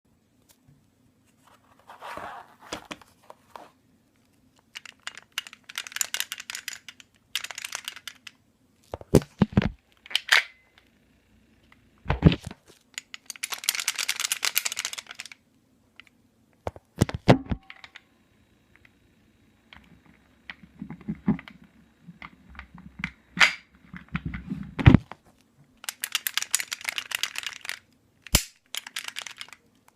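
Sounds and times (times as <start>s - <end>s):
pistol rattling clicks: 4.7s - 8.4s, 13.0s - 15.4s, 25.8s - 29.9s.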